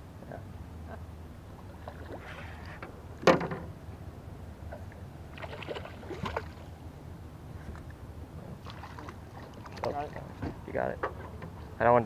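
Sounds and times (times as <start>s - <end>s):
low background rumble: 0.0s - 12.0s
fish splashing at water surface: 5.3s - 6.7s, 8.6s - 10.2s.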